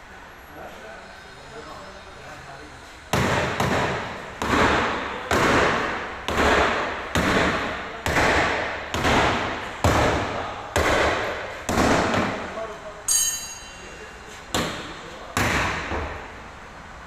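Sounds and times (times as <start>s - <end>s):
hammer blows on sheet metal: 3.1s - 16.4s.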